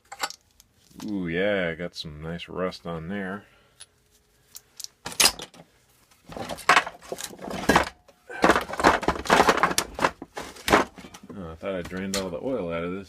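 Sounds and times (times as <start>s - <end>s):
metal parts scraping and clattering: 0.0s - 1.0s, 4.5s - 5.6s, 6.2s - 11.3s.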